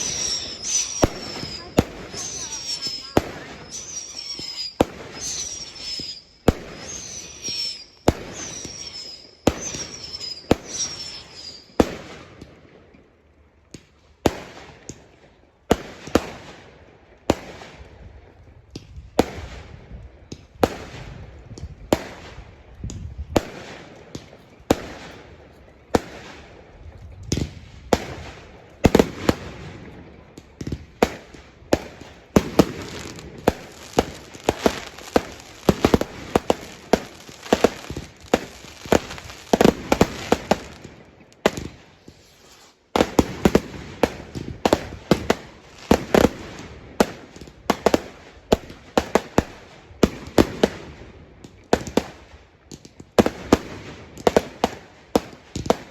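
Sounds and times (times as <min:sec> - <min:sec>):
falling whistle of fireworks: 0:00.0 - 0:12.2, 0:31.7 - 0:40.9
fireworks banging: 0:00.0 - 0:12.2, 0:27.3 - 0:50.8.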